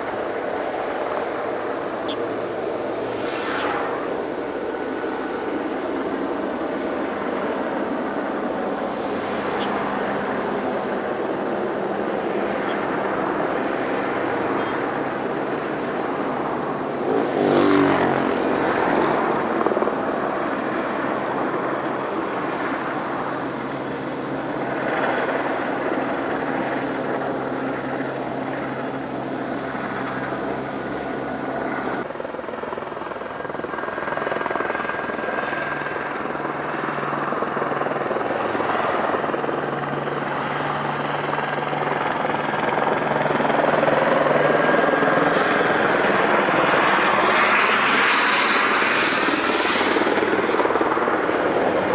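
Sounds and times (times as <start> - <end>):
helicopter rotor and turbine: 0.0 - 51.9.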